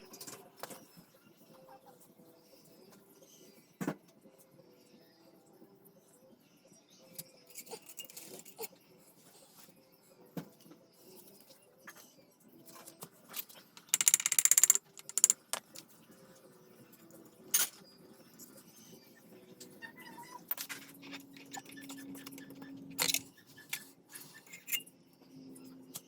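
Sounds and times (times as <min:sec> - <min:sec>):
metal tools clinking: 0:13.8 - 0:15.8.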